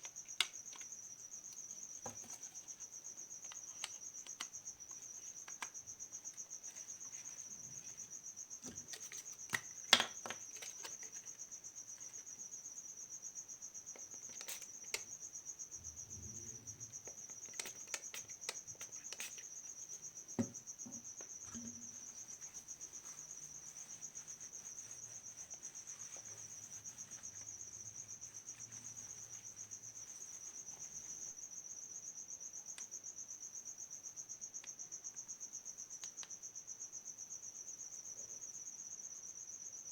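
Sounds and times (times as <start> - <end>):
light clicks and taps: 3.4 - 7.3.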